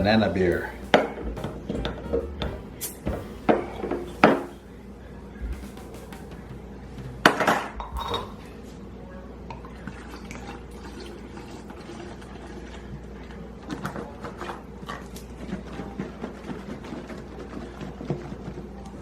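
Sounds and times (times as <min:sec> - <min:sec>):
pots and pans clattering: 0:00.0 - 0:04.6.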